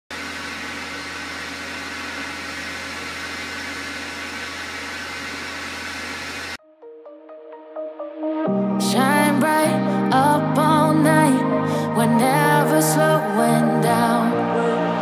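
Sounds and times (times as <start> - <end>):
machine low hum: 0.1 - 6.6.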